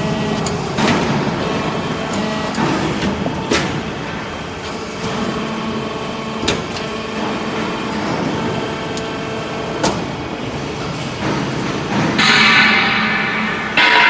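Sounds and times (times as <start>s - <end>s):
baler machine humming: 0.0s - 14.0s
sharp machine knocks: 11.9s - 14.0s.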